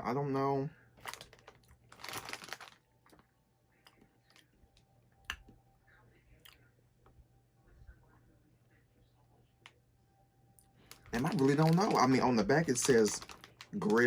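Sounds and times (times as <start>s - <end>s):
chewing crunchy snack: 12.7s - 14.0s.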